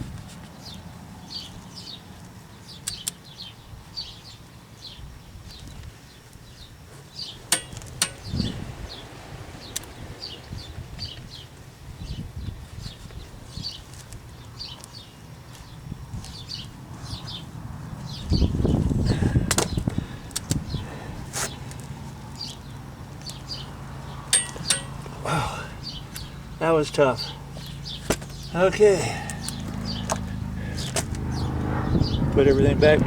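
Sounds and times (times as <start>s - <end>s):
bird chirping: 0.6s - 20.8s, 22.3s - 32.6s
torque wrench clicks: 2.8s - 3.2s
torque wrench straining and scuffing: 6.9s - 8.4s, 24.3s - 25.2s, 27.5s - 28.5s.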